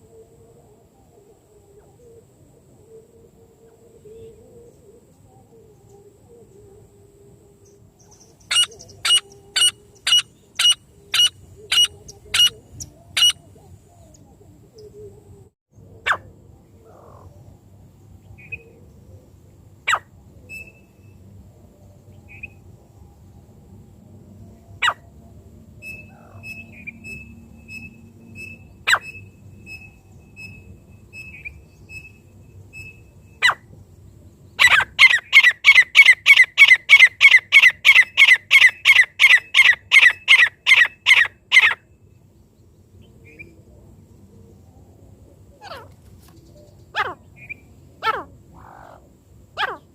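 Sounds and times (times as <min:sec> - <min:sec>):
francolin calling: 0:07.5 - 0:17.6, 0:18.2 - 0:21.3, 0:25.8 - 0:33.7, 0:34.5 - 0:42.0, 0:45.3 - 0:49.9.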